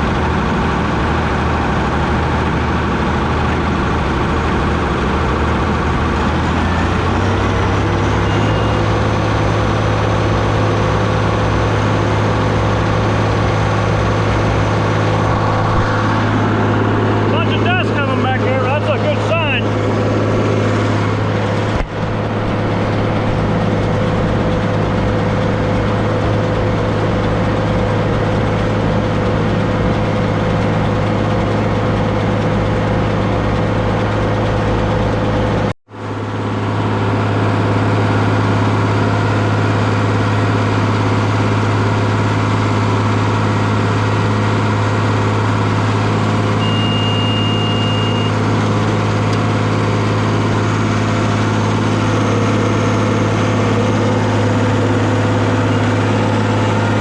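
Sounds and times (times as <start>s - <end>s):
tractor diesel engine running: 0.0s - 57.0s
short high beep: 8.2s - 8.9s, 46.6s - 48.4s.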